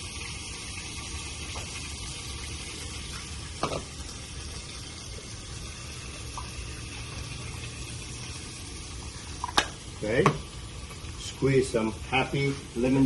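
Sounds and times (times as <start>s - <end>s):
fish sizzling in a frying pan: 0.0s - 13.0s.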